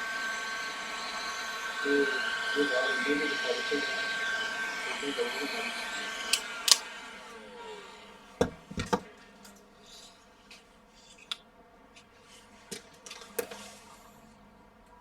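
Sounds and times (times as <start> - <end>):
tools clicking and knocking: 6.3 - 6.8.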